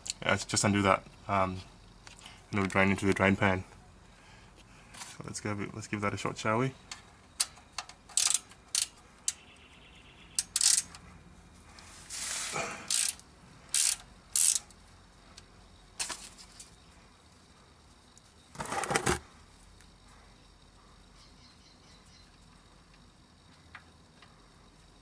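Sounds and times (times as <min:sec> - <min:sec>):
wrench clicking on metal: 0:07.4 - 0:09.4, 0:10.4 - 0:11.0, 0:12.9 - 0:14.7.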